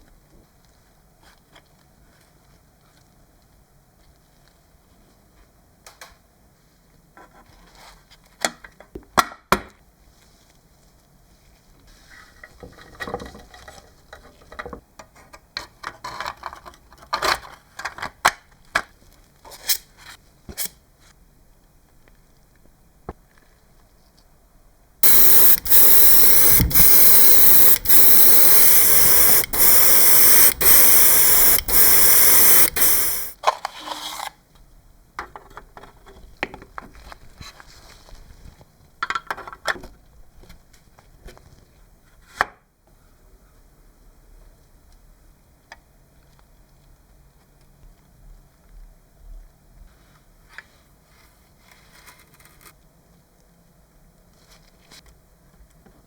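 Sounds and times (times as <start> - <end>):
loud spraying hiss: 25.0 - 33.4.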